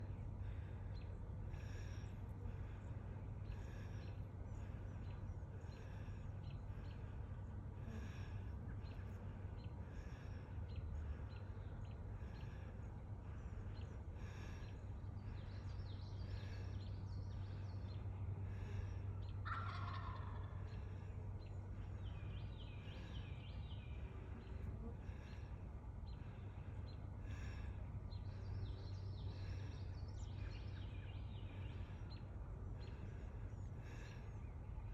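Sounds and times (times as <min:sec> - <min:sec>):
small birds chirping: 0:00.0 - 0:34.9
steady low hum: 0:00.0 - 0:34.9
turkey gobbling: 0:19.4 - 0:20.6.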